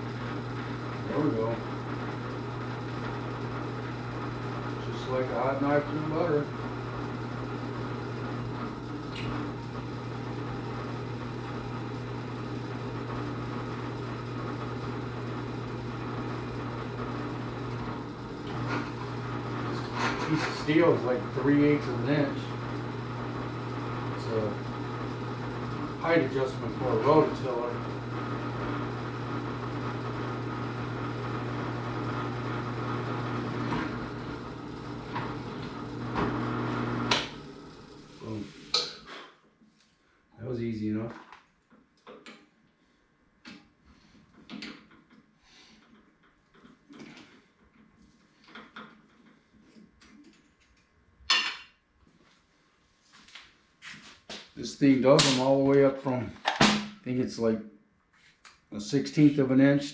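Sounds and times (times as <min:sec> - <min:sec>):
electric drill boring through steel: 0:13.9 - 0:38.3
drill motor cutoff click: 0:30.8 - 0:37.8.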